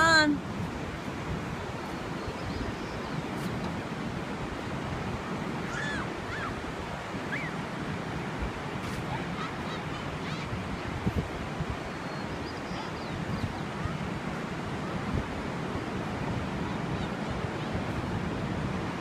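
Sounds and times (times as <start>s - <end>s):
waves washing on shore: 0.0s - 19.0s
wind buffeting microphone: 0.0s - 19.0s
faint high cries: 5.6s - 6.6s, 7.2s - 7.6s, 9.1s - 10.6s.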